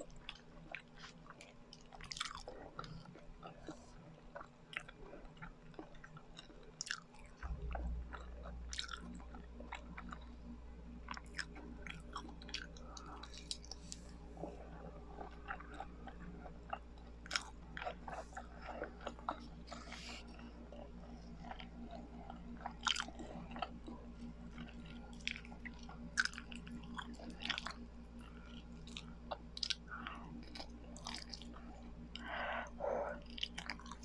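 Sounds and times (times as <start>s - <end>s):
chewing sticky food: 0.0s - 34.0s
low hum: 7.3s - 34.0s.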